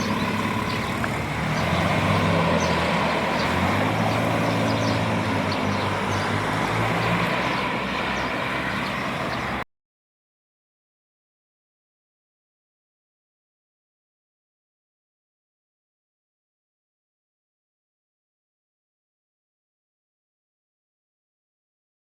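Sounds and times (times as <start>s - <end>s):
vehicle engine running: 0.0s - 9.6s
traffic noise: 0.0s - 9.7s.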